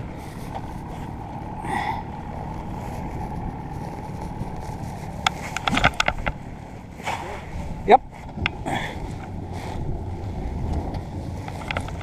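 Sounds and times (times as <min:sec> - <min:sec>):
outboard motor running: 0:00.0 - 0:12.0.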